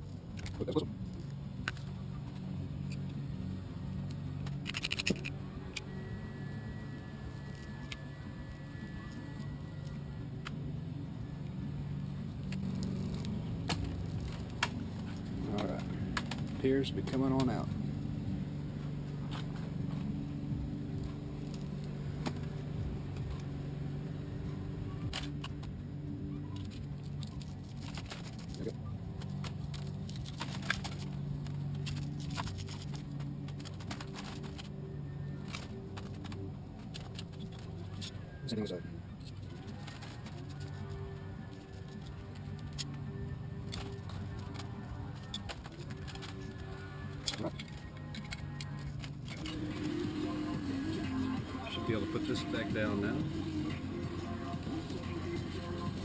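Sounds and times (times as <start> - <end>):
faint background music: 0.0 - 56.0
steady low hum: 0.0 - 56.0.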